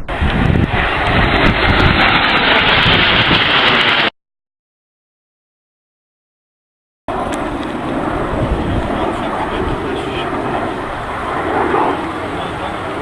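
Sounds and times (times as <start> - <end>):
aircraft engine rumbling: 0.0 - 4.1, 7.1 - 13.0.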